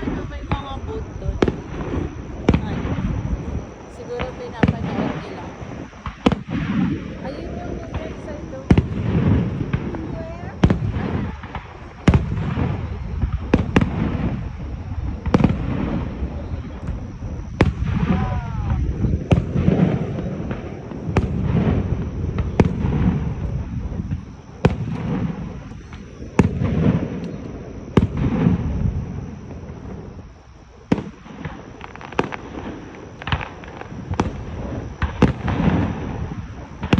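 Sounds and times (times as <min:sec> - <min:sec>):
fireworks bursting with sharp bangs: 0:00.0 - 0:36.9
low rumble: 0:00.0 - 0:36.9.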